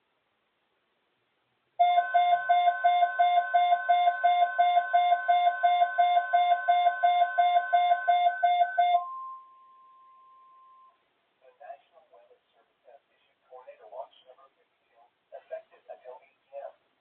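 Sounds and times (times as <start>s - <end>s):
electronic chirping alert: 1.8s - 10.9s
steady warning tone: 1.8s - 11.0s.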